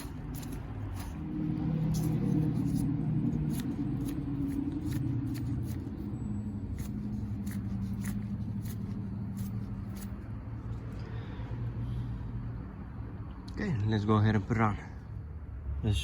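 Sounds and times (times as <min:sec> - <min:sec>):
small metal parts rattling: 0:00.0 - 0:01.2, 0:06.7 - 0:10.3
steady low hum: 0:00.0 - 0:16.0.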